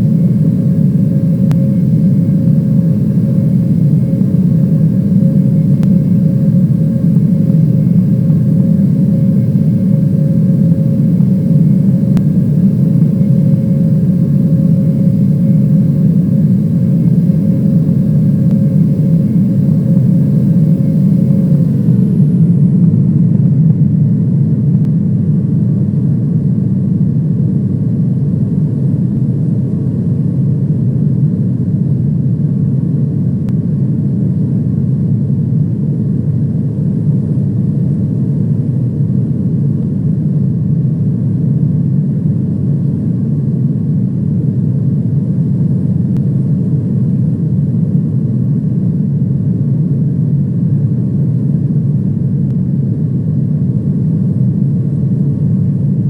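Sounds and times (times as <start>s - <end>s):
jet engine cabin drone: 0.0s - 56.0s.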